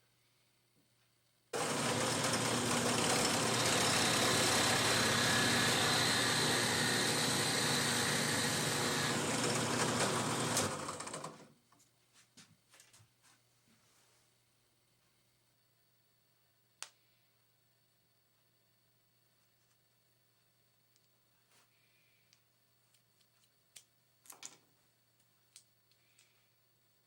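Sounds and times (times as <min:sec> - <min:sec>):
power tool motor running: 0:01.6 - 0:11.5.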